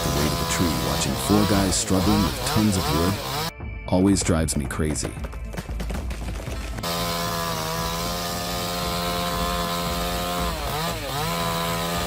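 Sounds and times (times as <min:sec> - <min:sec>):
chainsaw engine whining: 0:00.0 - 0:03.6, 0:06.7 - 0:12.0.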